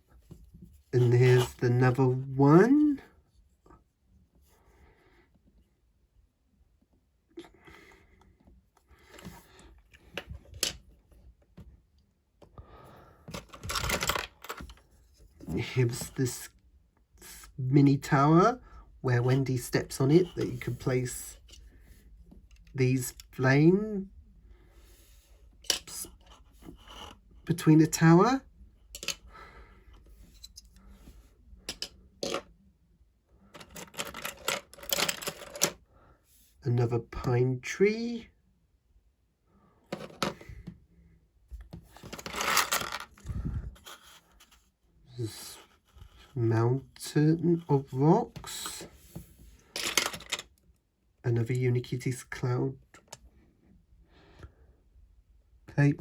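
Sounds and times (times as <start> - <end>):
plastic pieces clicking and rustling: 13.3 - 14.8, 33.6 - 35.8, 42.0 - 43.2, 49.8 - 50.5.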